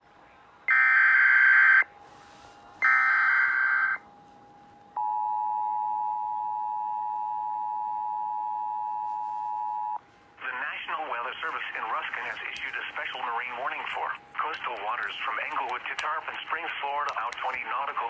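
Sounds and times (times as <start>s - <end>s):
steady warning alarm tone: 0.7s - 10.0s.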